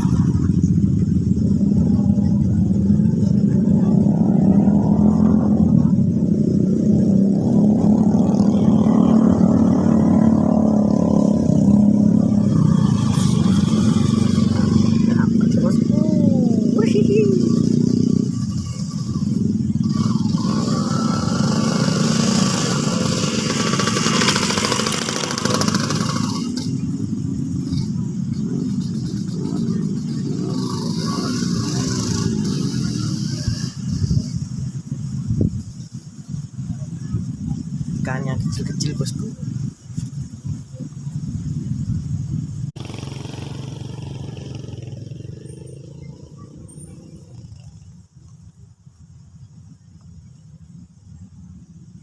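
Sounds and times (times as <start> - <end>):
low rumbling noise: 0.0 - 52.0
small engine running: 7.9 - 34.4, 42.8 - 46.3.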